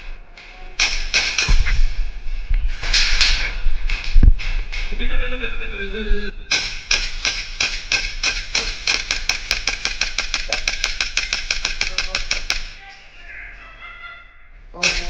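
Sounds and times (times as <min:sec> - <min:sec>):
airsoft gun rapid shots: 0:06.5 - 0:12.8.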